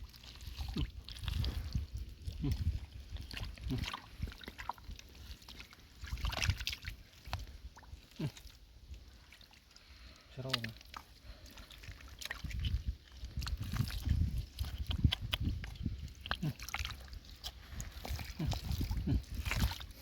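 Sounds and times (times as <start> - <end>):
mud sucking sounds: 0.0 - 20.0
squelching and sloshing in mud: 0.0 - 20.0.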